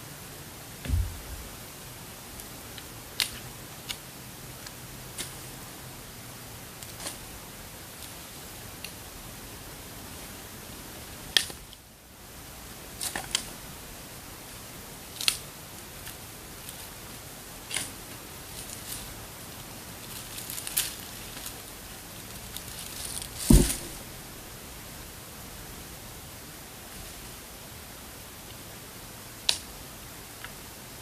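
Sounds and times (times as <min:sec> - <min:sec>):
steady hiss: 0:00.0 - 0:31.0
heavy thump: 0:00.8 - 0:01.6, 0:23.4 - 0:24.2.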